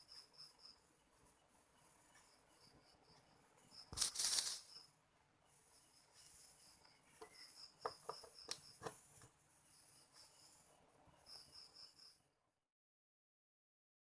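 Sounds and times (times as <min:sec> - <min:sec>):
insect chirping: 0:00.0 - 0:12.3.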